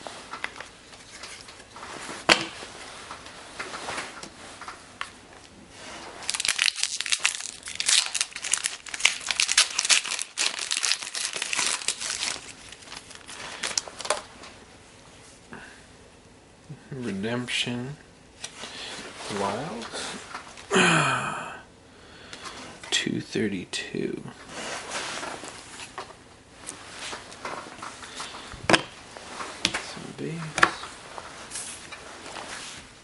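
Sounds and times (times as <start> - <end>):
foil wrapper crinkling and tearing: 6.2 - 14.3.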